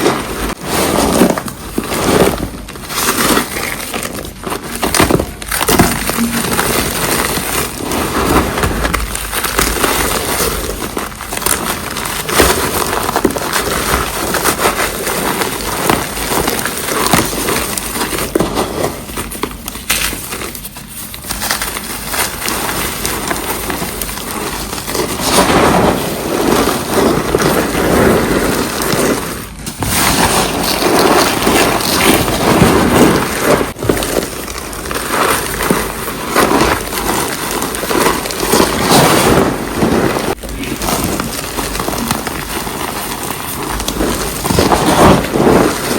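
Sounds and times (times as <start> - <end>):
cornstarch blocks crunching: 0.0 - 45.9.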